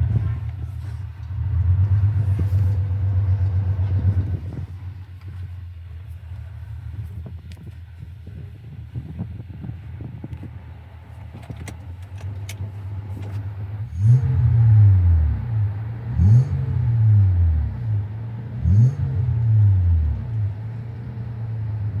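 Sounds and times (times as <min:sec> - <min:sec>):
engine revving: 0:00.0 - 0:05.0, 0:12.1 - 0:22.0
car engine idling: 0:00.0 - 0:18.8.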